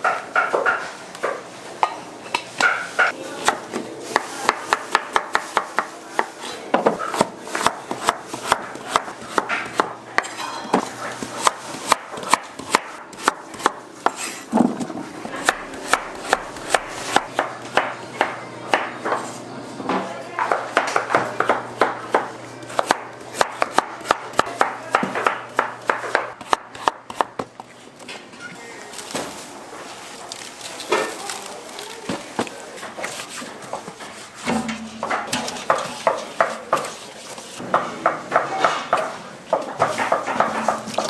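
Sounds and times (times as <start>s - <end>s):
knife chopping on cutting board: 2.6s - 14.3s, 15.2s - 19.2s, 20.4s - 27.5s.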